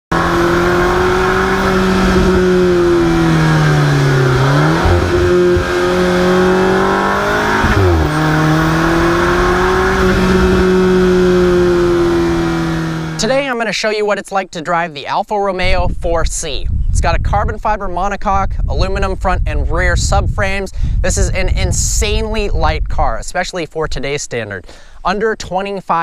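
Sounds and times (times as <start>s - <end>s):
car engine revving high: 0.1s - 13.3s.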